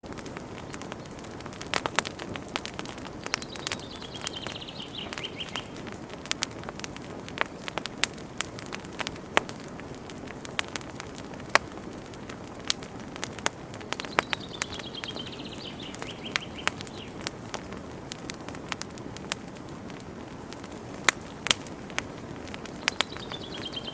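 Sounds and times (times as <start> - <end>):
burning wood popping: 0.0 - 23.9
campfire crackling: 0.0 - 23.9
low steady hiss: 0.0 - 23.9.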